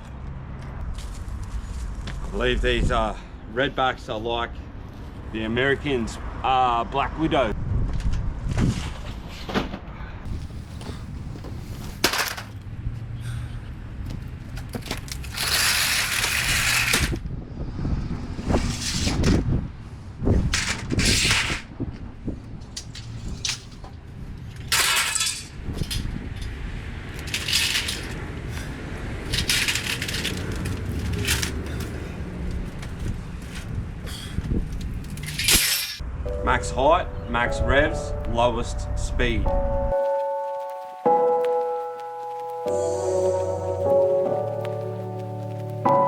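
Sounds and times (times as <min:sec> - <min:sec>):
debris rustling and clattering: 0:10.4 - 0:12.6, 0:14.5 - 0:17.2, 0:20.3 - 0:21.7, 0:22.6 - 0:33.8, 0:34.7 - 0:36.0.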